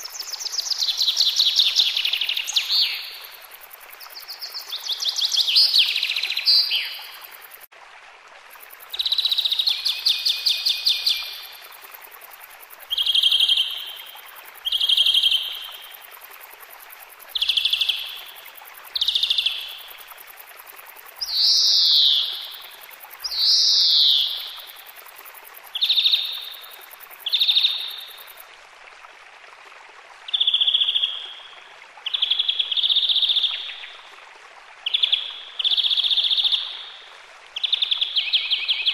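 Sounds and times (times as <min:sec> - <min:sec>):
songbird singing: 0:00.0 - 0:07.5, 0:08.9 - 0:11.8, 0:17.3 - 0:20.0, 0:21.2 - 0:24.7, 0:37.6 - 0:38.9.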